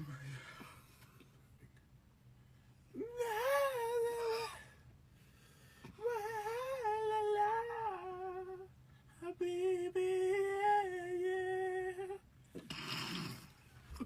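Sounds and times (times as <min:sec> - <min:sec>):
person humming: 0:03.0 - 0:04.6, 0:06.0 - 0:08.6.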